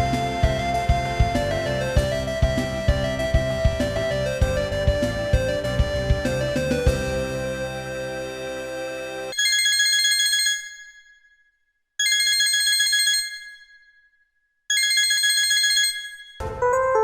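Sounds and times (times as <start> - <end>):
melodic ringtone: 0.0 - 10.1, 15.5 - 17.0
electronic phone ringtone: 9.3 - 11.1, 12.0 - 13.8, 14.7 - 17.0.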